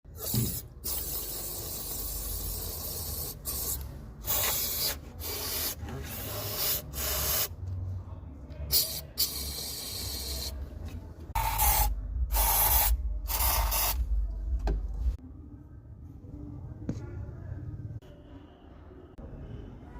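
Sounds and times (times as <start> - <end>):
engine low rumble: 10.6 - 18.2.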